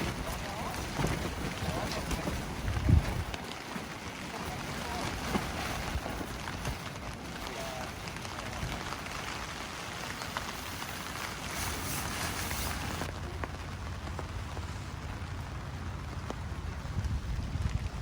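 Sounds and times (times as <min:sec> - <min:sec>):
steady rain falling: 0:00.0 - 0:18.0
wind rumble on microphone: 0:00.0 - 0:18.0.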